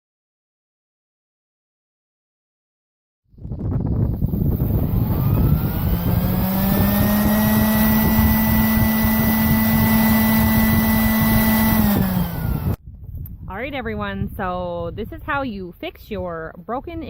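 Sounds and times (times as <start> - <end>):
electric motor humming: 4.1 - 12.8.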